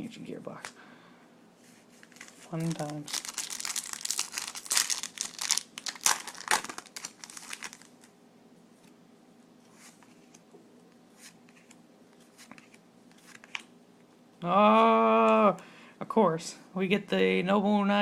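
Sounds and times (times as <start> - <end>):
trading cards clicking and rustling: 2.0 - 8.0, 11.2 - 13.7
foil wrapper crinkling: 2.0 - 8.1.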